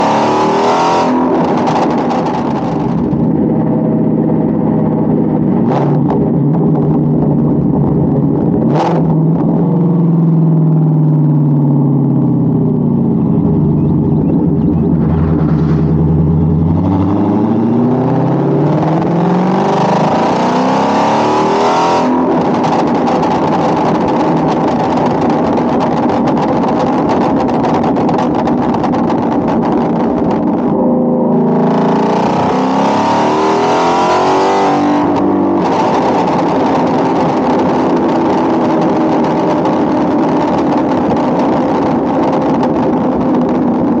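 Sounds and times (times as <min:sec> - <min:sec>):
car engine accelerating: 0:00.0 - 0:44.0
exhaust pops and crackles: 0:22.1 - 0:30.8, 0:35.0 - 0:44.0.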